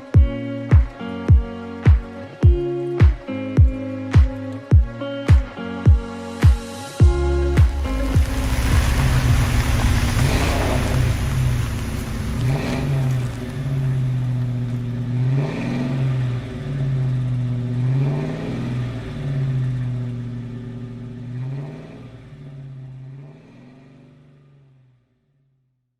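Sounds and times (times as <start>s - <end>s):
car engine revving: 7.0s - 25.1s.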